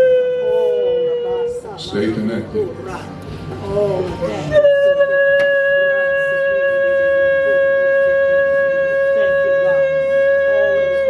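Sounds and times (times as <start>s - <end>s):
shofar long steady note: 0.0s - 1.7s, 4.5s - 11.0s.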